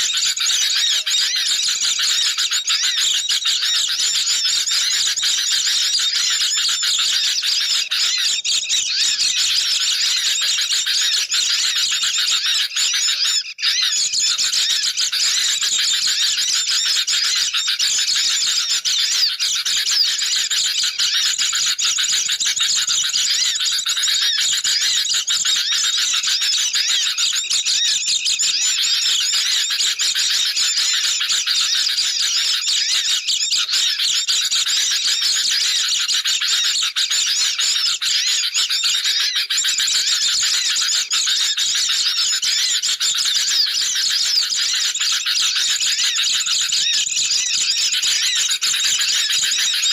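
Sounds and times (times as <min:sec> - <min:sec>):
birds chattering and chirping: 0:00.0 - 0:49.9.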